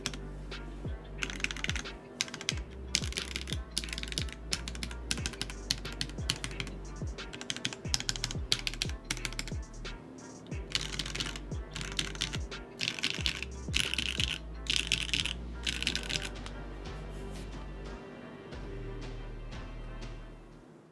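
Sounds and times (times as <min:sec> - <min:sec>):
fast mechanical keyboard typing: 0:00.0 - 0:00.2, 0:01.2 - 0:09.7, 0:10.5 - 0:16.5
music with repeating bass beat: 0:00.0 - 0:18.0, 0:18.6 - 0:20.6.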